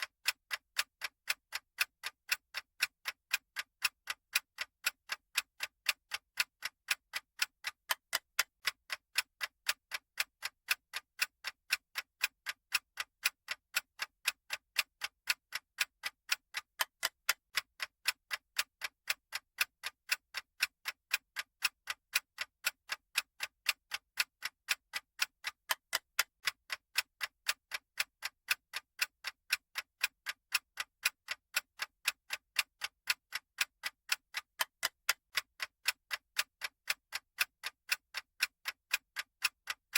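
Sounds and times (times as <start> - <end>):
clock ticking: 0.0 - 39.9.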